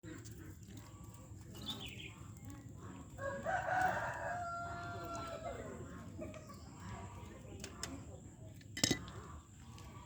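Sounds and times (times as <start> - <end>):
rooster crowing: 3.2 - 5.6.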